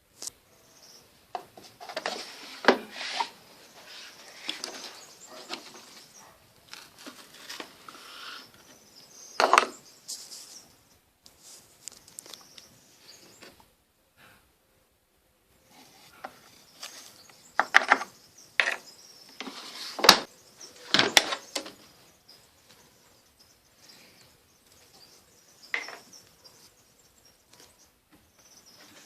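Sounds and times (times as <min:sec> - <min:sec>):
rustling: 0:01.3 - 0:13.7, 0:15.6 - 0:23.2.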